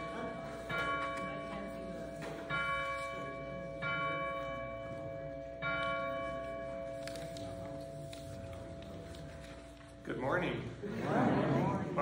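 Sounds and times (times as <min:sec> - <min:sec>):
church bell tolling: 0:00.0 - 0:08.1.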